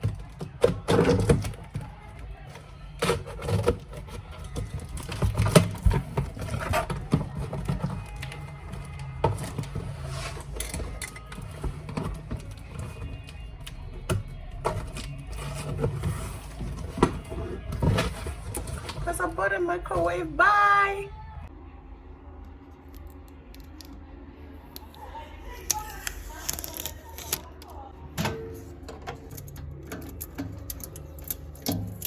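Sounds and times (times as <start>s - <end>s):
music playing: 0.9s - 22.1s.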